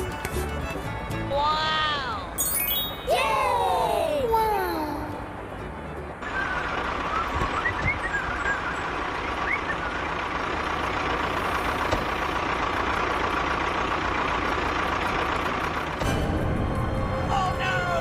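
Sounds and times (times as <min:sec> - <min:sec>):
truck engine droning with whine: 0:00.0 - 0:18.0
short chirps: 0:02.4 - 0:03.2.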